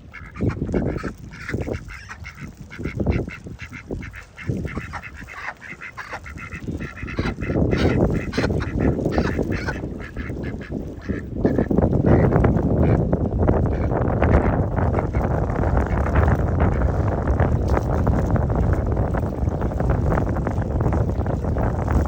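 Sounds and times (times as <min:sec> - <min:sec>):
waterfowl honking and quacking: 0:00.0 - 0:13.0
wind buffeting microphone: 0:00.0 - 0:22.0.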